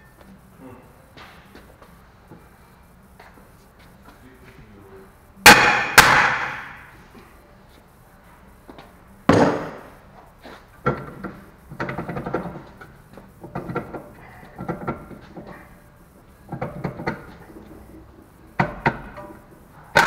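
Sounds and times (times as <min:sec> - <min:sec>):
hammer striking metal: 0:05.5 - 0:06.9.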